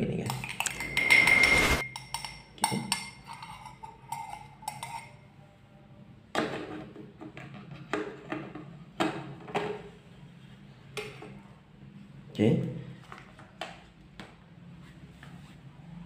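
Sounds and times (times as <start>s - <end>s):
teaspoon clinking against glass: 0.3s - 5.2s.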